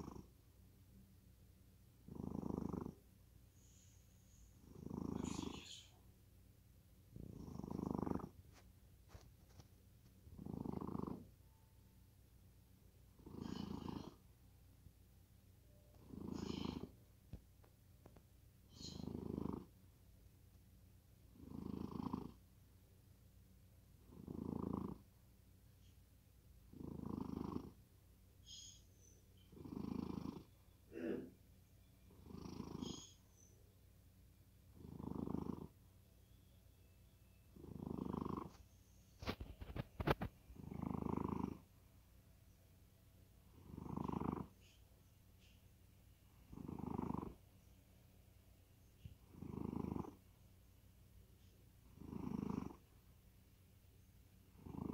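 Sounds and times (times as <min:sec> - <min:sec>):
cat snoring: 0:00.0 - 0:00.3, 0:02.0 - 0:03.0, 0:03.6 - 0:05.9, 0:07.1 - 0:09.6, 0:10.2 - 0:11.4, 0:13.1 - 0:14.2, 0:15.8 - 0:17.0, 0:18.7 - 0:19.8, 0:21.3 - 0:22.4, 0:24.0 - 0:25.1, 0:26.7 - 0:27.8, 0:28.4 - 0:31.3, 0:32.0 - 0:33.5, 0:34.7 - 0:35.8, 0:37.5 - 0:41.7, 0:43.5 - 0:44.8, 0:46.3 - 0:47.4, 0:49.0 - 0:50.2, 0:51.8 - 0:52.9, 0:54.5 - 0:54.9.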